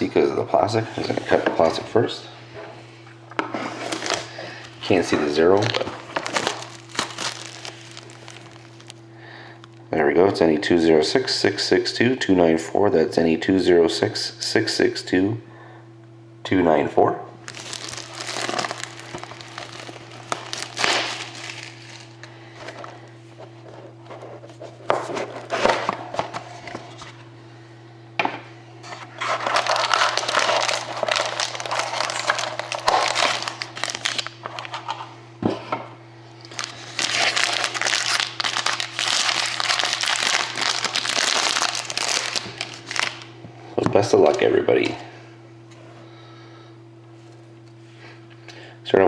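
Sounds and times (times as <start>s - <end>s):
plastic wrap crinkling: 3.7s - 9.8s, 17.4s - 23.0s, 29.2s - 34.9s, 36.4s - 43.3s.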